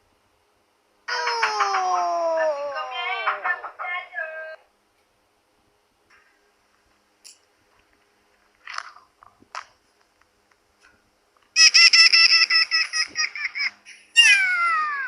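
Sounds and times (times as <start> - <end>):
pulsing squeaky cartoon voice: 14.2 - 15.0.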